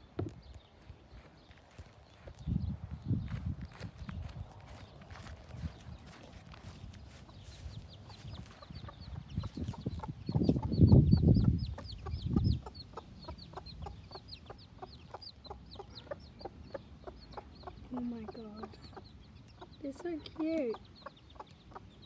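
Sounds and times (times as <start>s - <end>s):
chicks peeping: 0.2s - 22.0s
hen clucking: 4.6s - 22.0s.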